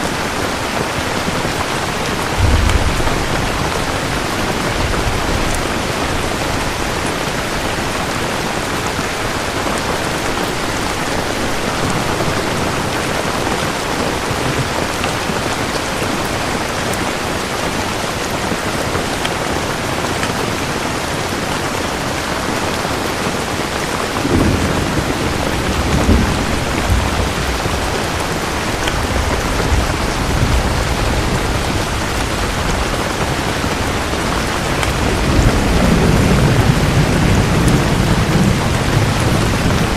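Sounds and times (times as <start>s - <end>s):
dense rain falling: 0.0s - 39.9s
low rumble of thunder: 1.8s - 15.0s, 24.1s - 39.9s.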